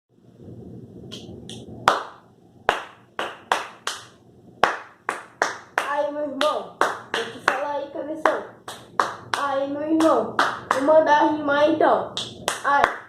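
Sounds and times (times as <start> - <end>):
hands clapping: 1.1 - 7.6, 8.3 - 10.9, 12.2 - 13.0.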